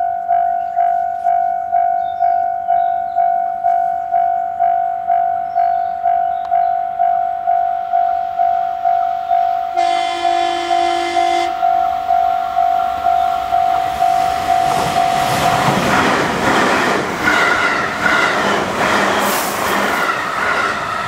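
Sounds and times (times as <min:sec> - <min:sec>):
level-crossing bell ringing: 0:00.0 - 0:15.8
train horn blast: 0:09.8 - 0:14.2.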